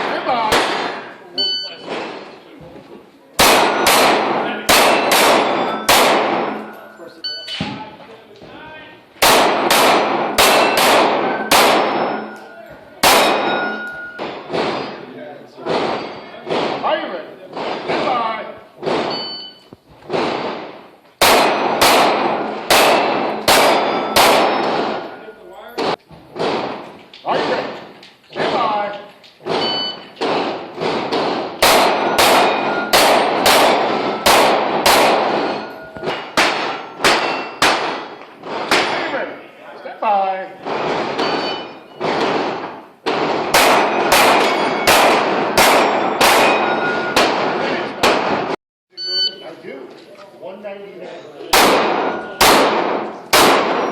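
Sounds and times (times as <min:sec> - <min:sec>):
pistol shots: 0:00.0 - 0:01.2, 0:01.8 - 0:02.4, 0:03.4 - 0:06.9, 0:09.2 - 0:12.4, 0:13.0 - 0:18.2, 0:18.8 - 0:19.3, 0:20.1 - 0:25.2, 0:25.8 - 0:28.8, 0:29.4 - 0:39.2, 0:40.6 - 0:48.6, 0:51.5 - 0:53.9
steel targets ringing: 0:03.6 - 0:07.6, 0:10.3 - 0:15.1, 0:22.9 - 0:25.8, 0:31.7 - 0:38.3, 0:41.2 - 0:42.1, 0:43.8 - 0:47.4, 0:51.8 - 0:52.9.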